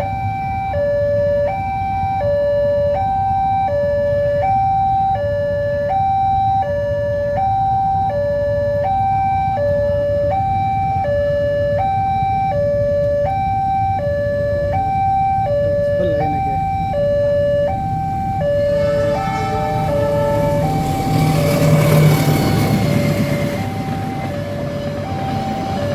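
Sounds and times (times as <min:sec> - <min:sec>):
level crossing two-tone alarm: 0:00.0 - 0:25.9
low rumble: 0:15.5 - 0:25.9.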